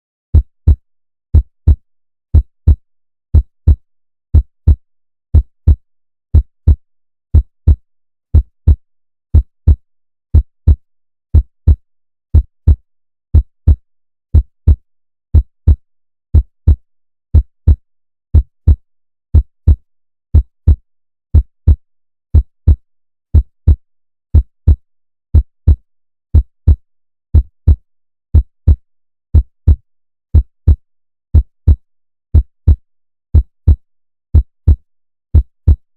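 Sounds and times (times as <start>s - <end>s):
heartbeat thumps: 0.3s - 10.8s, 11.4s - 11.8s, 12.4s - 12.8s, 13.4s - 13.8s, 14.4s - 14.8s, 15.4s - 15.8s, 16.4s - 16.8s, 17.4s - 17.8s, 18.4s - 18.8s, 19.4s - 19.8s, 20.4s - 20.8s, 21.4s - 21.8s, 22.4s - 22.8s, 23.4s - 23.8s, 24.4s - 24.8s, 25.4s - 25.8s, 26.4s - 26.8s, 27.4s - 27.8s, 28.4s - 28.8s, 29.4s - 29.8s, 30.4s - 30.8s, 31.4s - 31.8s, 32.4s - 32.8s, 33.4s - 33.8s, 35.4s - 35.8s.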